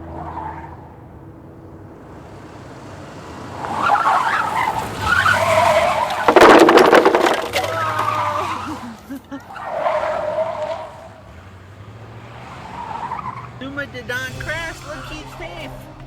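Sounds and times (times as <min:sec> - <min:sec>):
toy car crashing into cups: 0:05.6 - 0:09.0.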